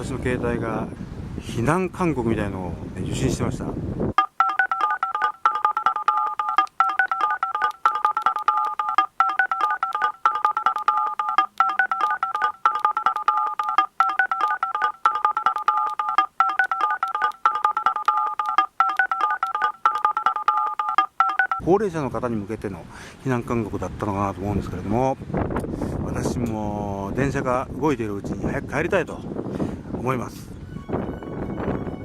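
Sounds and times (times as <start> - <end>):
phone alert tone warbling: 4.2 - 21.6.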